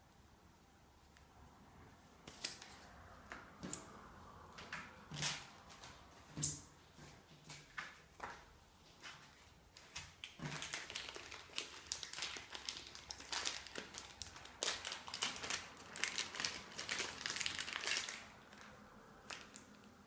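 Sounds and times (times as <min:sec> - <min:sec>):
packaging crinkling: 0:09.8 - 0:19.8.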